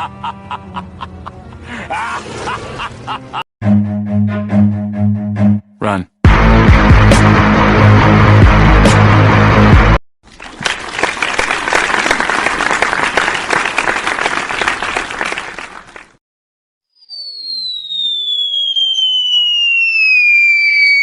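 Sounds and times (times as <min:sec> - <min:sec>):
high falling whistle: 0:16.9 - 0:21.0.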